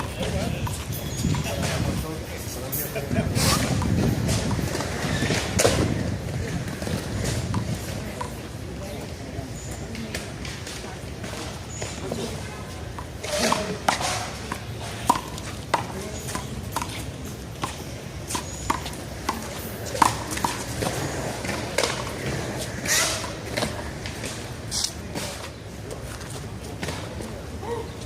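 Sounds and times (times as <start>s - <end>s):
handball smacking wall and pavement: 12.9s - 25.5s.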